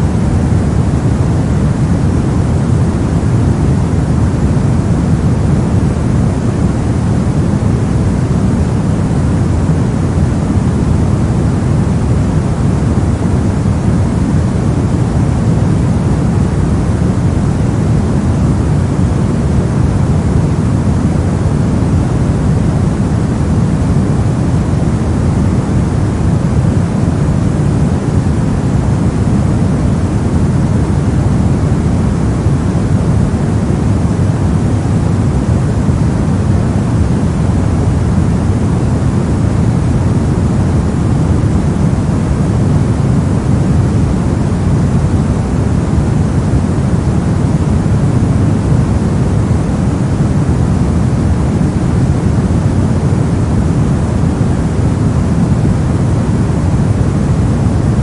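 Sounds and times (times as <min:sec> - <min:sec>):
brown noise: 0:00.0 - 0:58.0.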